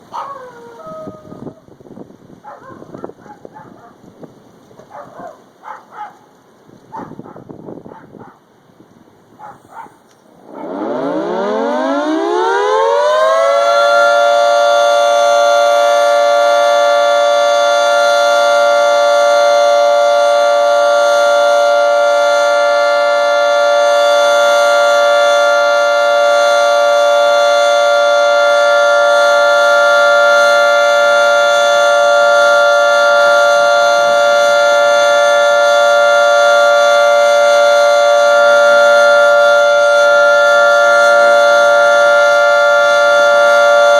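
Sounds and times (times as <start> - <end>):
warning siren winding up: 10.4 - 43.9.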